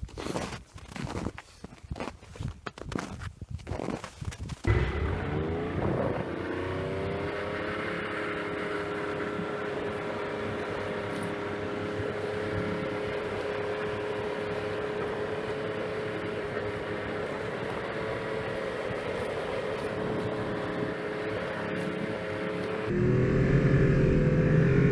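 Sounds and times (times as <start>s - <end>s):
snowmobile engine running: 4.7s - 24.9s.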